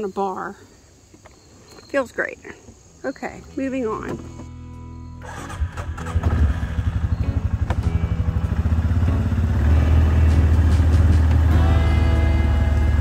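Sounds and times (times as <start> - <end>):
small engine pulsing: 5.2 - 13.0.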